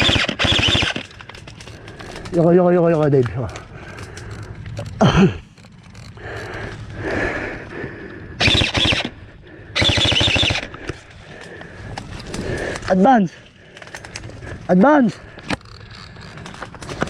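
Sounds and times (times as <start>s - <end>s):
airsoft rifle full-auto bursts: 0.0s - 1.2s, 8.4s - 9.2s, 9.8s - 10.7s.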